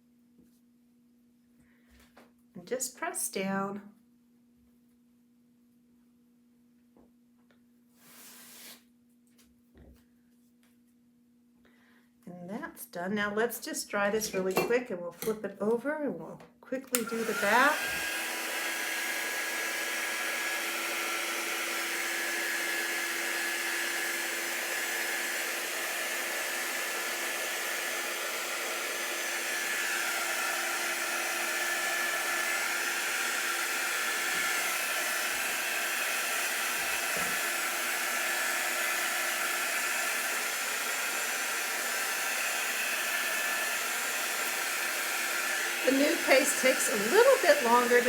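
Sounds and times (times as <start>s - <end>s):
small electric blower running: 17.0s - 48.0s.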